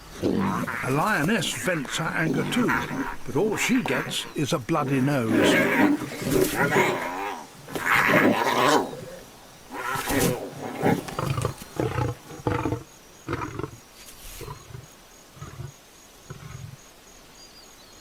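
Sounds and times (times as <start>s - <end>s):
lion roaring: 0.0s - 13.7s.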